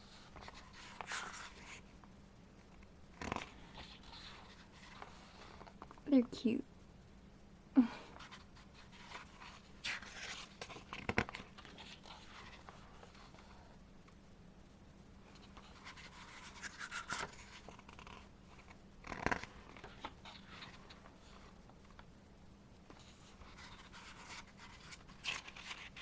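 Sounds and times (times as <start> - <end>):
paper rustling: 8.2 - 13.6, 15.3 - 21.6, 22.9 - 26.0
photo book pages turning: 8.3 - 13.6, 15.4 - 22.0, 22.9 - 26.0.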